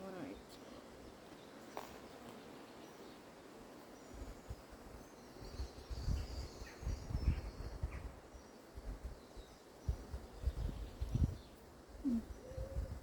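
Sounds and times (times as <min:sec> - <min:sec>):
faint bird chirps: 0:03.9 - 0:08.6, 0:09.2 - 0:13.0
wind buffeting microphone: 0:05.4 - 0:13.0.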